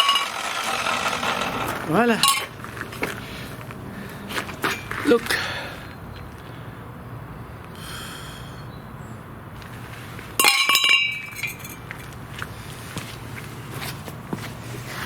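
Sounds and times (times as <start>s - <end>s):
bright metallic ringing: 0.0s - 2.5s
metal clanging and clattering: 0.0s - 2.6s, 10.4s - 12.1s.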